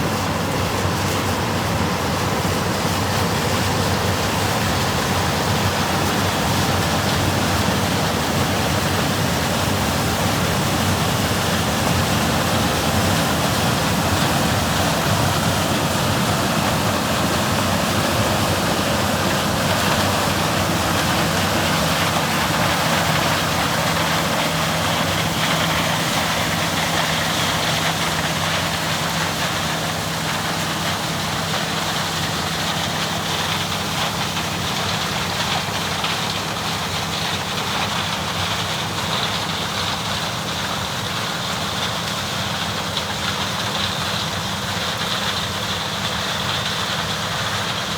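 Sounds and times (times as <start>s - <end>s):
low engine drone: 0.0s - 37.7s
combine harvester machinery rush: 0.0s - 47.9s.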